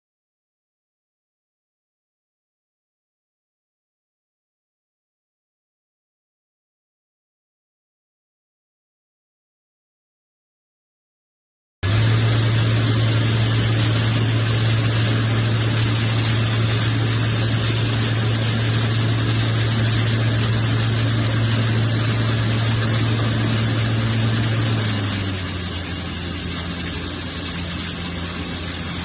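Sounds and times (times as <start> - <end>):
lathe running: 11.8 - 29.0.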